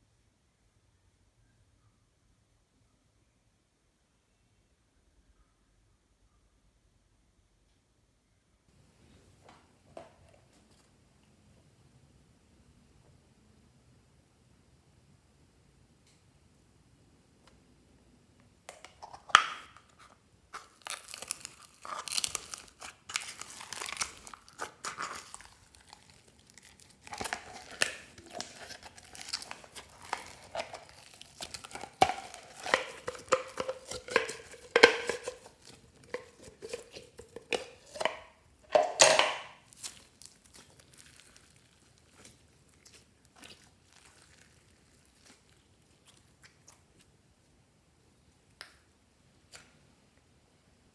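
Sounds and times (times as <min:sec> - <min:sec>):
slime being squished by hand: 0:20.6 - 0:38.3, 0:39.0 - 0:47.1.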